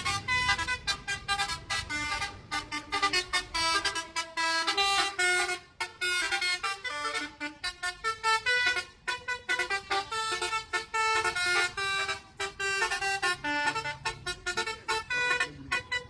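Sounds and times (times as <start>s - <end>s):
multi-tone air horn tune: 0.0s - 16.0s.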